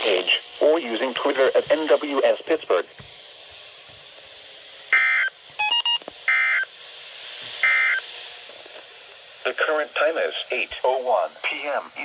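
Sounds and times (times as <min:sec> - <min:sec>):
touch-tone beeps: 0:05.0 - 0:06.0
faint radio hiss: 0:08.4 - 0:12.0.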